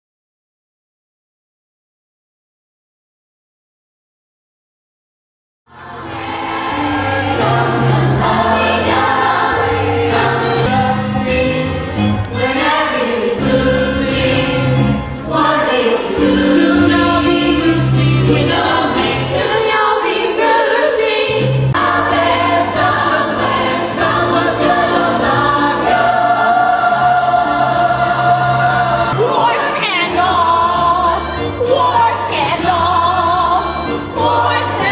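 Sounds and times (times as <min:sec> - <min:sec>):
instrumental accompaniment with bass: 0:05.7 - 0:19.7, 0:21.1 - 0:34.9
chorus singing: 0:05.7 - 0:34.9.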